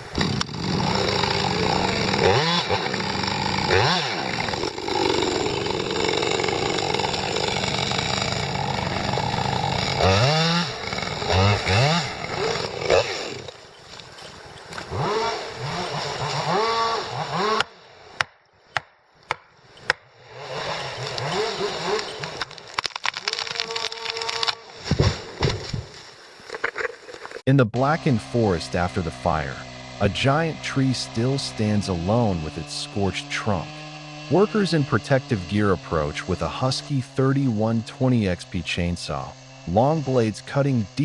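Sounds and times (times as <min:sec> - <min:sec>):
sharp cracks: 0:00.0 - 0:16.4, 0:20.9 - 0:27.4
chainsaw revving: 0:00.0 - 0:17.9, 0:19.7 - 0:24.7, 0:27.8 - 0:41.0.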